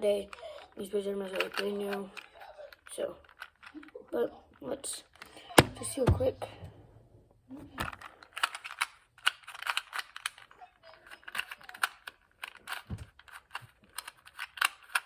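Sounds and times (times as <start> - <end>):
puzzle cube layers clicking: 8.3 - 10.5, 11.2 - 15.0.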